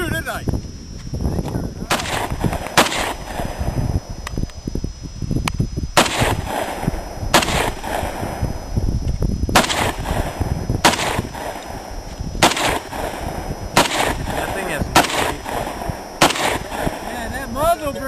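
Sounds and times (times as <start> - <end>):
single gunshots: 1.9 - 3.8, 6.0 - 8.5, 9.5 - 17.2.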